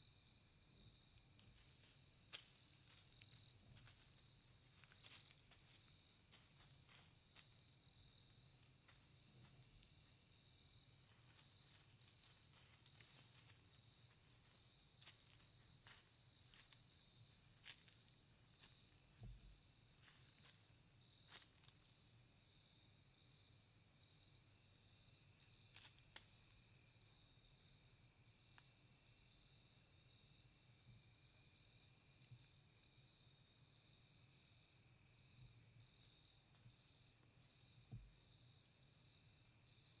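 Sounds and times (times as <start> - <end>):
crickets trilling: 0.0 - 40.0
faint ticks: 25.7 - 26.6.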